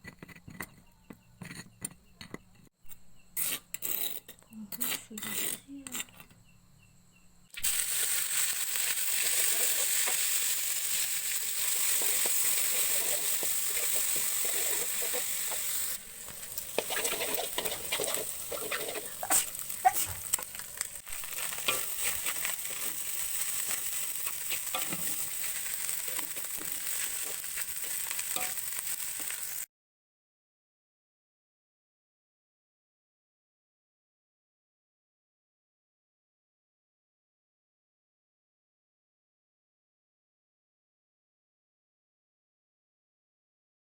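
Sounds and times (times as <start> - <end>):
spatula scraping a pan: 0.0 - 2.4, 3.4 - 6.3, 7.7 - 29.6
food sizzling in hot oil: 7.6 - 29.7.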